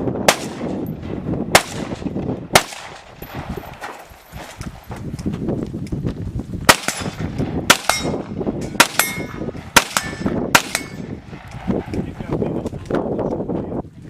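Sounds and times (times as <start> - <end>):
rifle shots: 0.2 - 4.0, 6.7 - 11.6
metallic ring of steel target: 6.9 - 11.2.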